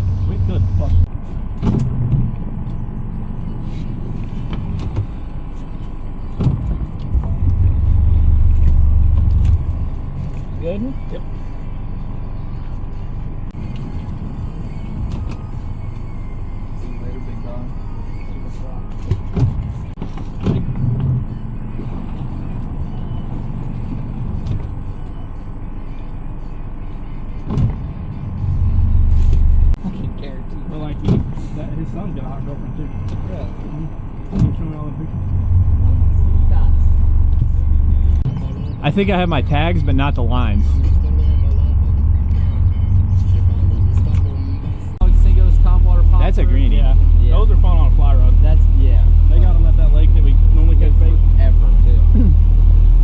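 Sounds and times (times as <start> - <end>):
boat motor running: 0.0 - 11.1, 32.9 - 53.0.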